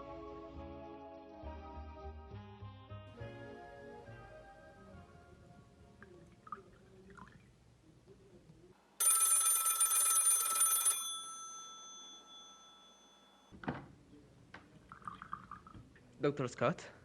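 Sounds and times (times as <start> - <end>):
telephone bell ringing: 9.0 - 13.5.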